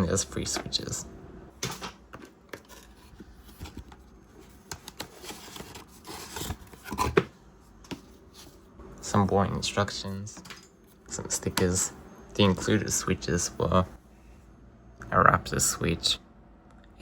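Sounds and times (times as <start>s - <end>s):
paper and packaging rustling: 1.9s - 8.7s.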